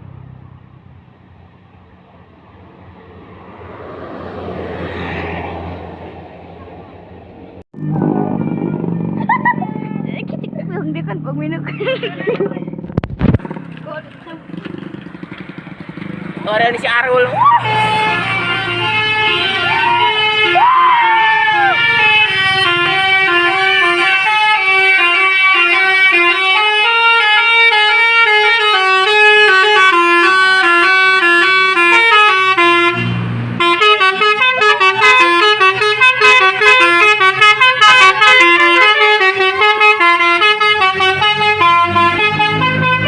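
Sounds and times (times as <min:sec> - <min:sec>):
bus musical air horn melody: 0:17.5 - 0:43.0.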